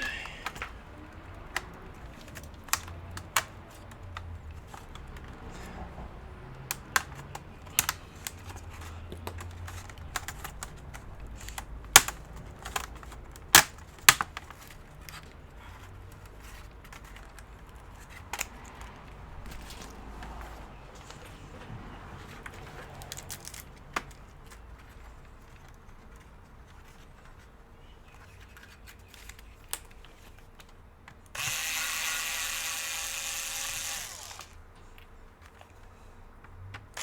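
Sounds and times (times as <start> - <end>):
plastic snaps: 0.4 - 5.3, 6.6 - 15.3
laptop keyboard clicks and taps: 0.5 - 5.4, 6.5 - 15.2.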